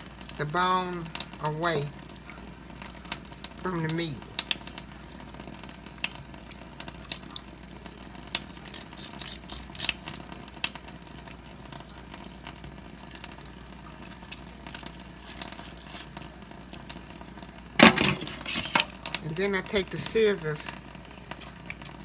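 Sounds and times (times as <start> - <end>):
knife cutting meat and bone: 8.3 - 10.2, 14.3 - 16.2, 17.8 - 19.0.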